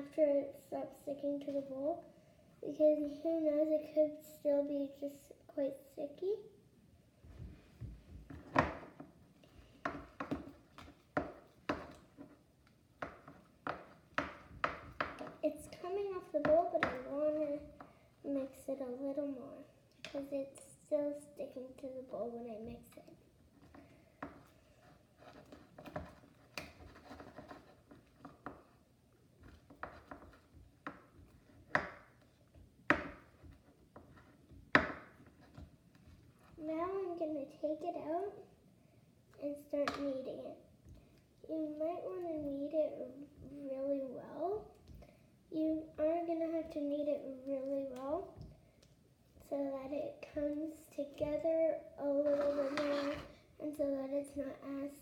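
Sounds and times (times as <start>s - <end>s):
sticky slime stirring clacks: 9.6s - 18.5s
utensil scraping against bowl: 52.2s - 53.4s.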